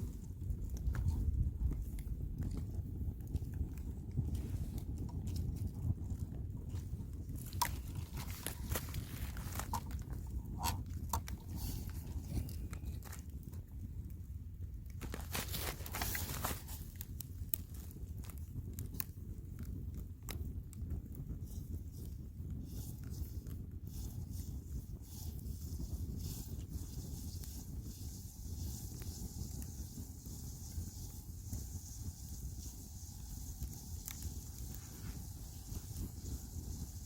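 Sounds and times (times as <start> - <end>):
rustling and crunching: 0.0 - 13.9, 14.8 - 19.2
campfire crackling and popping: 0.0 - 37.0
low fire rumble: 0.0 - 37.0.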